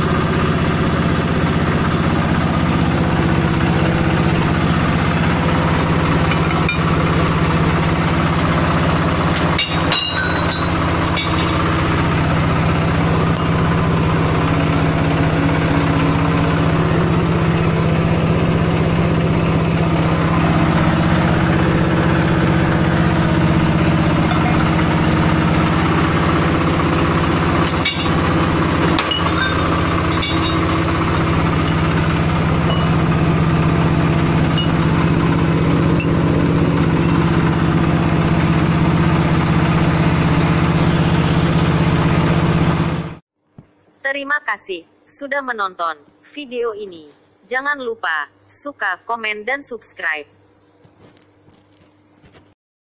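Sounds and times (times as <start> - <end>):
bending machine humming: 0.0 - 52.4
sharp metallic clinks: 9.4 - 11.6.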